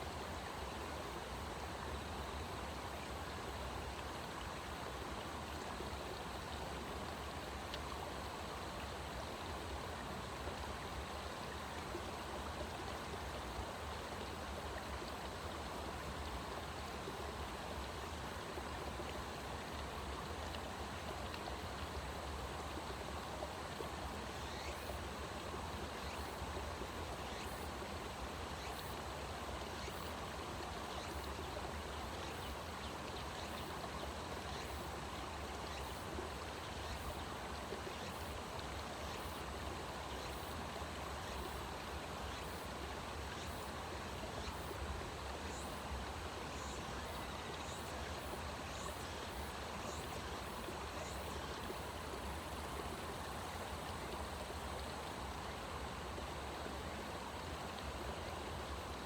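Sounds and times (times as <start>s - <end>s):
stream running: 0.0s - 59.0s.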